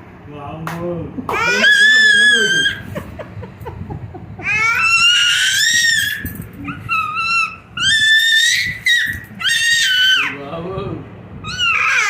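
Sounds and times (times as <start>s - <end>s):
child squealing: 1.3s - 2.9s, 4.4s - 10.4s, 11.4s - 12.0s.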